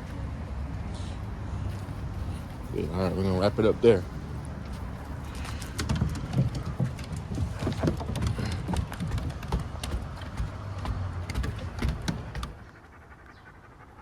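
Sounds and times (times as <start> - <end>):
rapid footfalls and clicks: 4.1 - 12.8.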